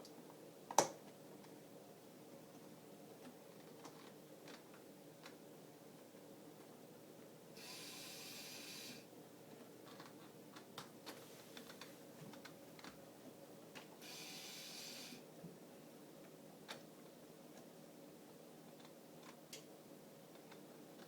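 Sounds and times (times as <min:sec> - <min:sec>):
hiss: 0:07.6 - 0:09.0, 0:14.0 - 0:15.2.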